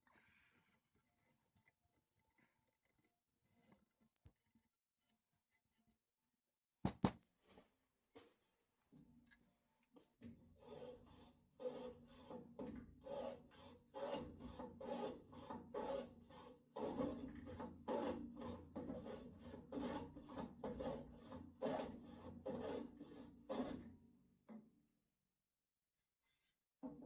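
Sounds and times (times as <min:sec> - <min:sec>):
wood being rasped by hand: 0:10.6 - 0:12.3, 0:13.0 - 0:17.2.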